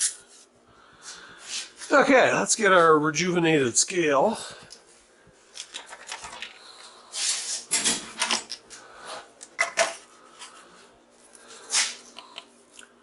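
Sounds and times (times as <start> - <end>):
faint steady hum: 0.0 - 13.0
objects clattering on a workbench: 5.6 - 6.6, 7.5 - 8.6, 9.4 - 10.5.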